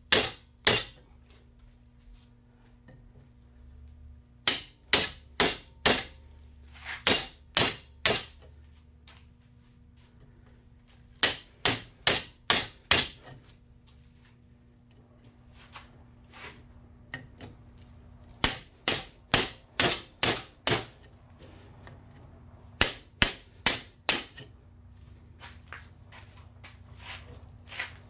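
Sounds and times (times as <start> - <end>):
hammer striking steel punch: 0.1 - 1.0, 4.4 - 6.2, 7.0 - 8.4, 11.2 - 13.2, 18.4 - 21.1, 22.8 - 24.5.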